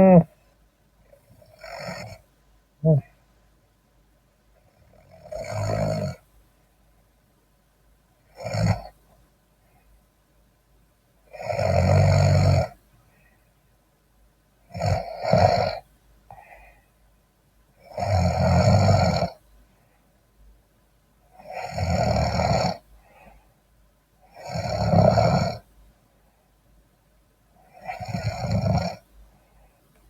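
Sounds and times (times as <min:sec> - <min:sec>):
man snoring: 0:00.0 - 0:00.3, 0:01.5 - 0:02.2, 0:02.8 - 0:03.1, 0:04.9 - 0:06.2, 0:08.4 - 0:08.9, 0:11.3 - 0:12.8, 0:14.7 - 0:15.8, 0:17.9 - 0:19.4, 0:21.4 - 0:22.8, 0:24.4 - 0:25.6, 0:27.7 - 0:29.0.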